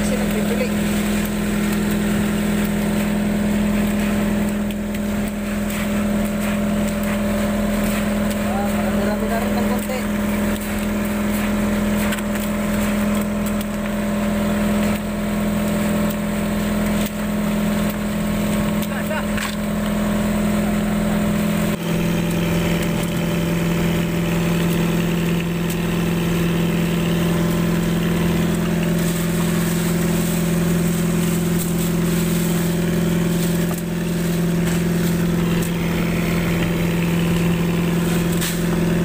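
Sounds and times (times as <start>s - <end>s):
boat engine running: 0.0s - 39.0s.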